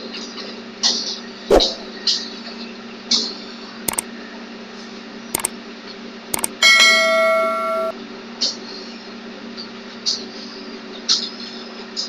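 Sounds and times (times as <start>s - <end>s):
bell-like computer alert chime: 6.4s - 7.9s.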